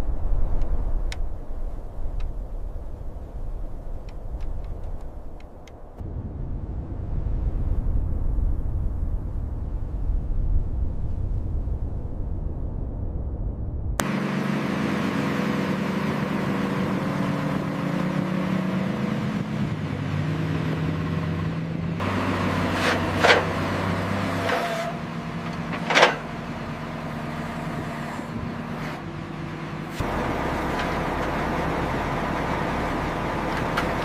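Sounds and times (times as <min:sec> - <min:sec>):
heavy machine engine running: 0:13.9 - 0:34.0.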